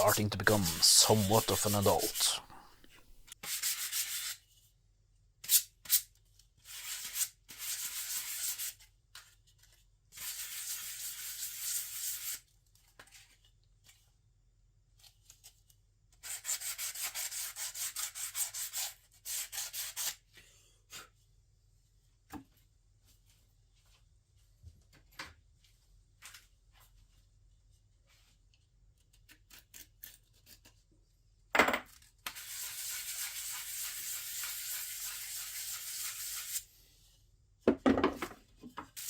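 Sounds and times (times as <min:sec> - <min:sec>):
sandpaper rubbing on wood: 0:32.4 - 0:36.6.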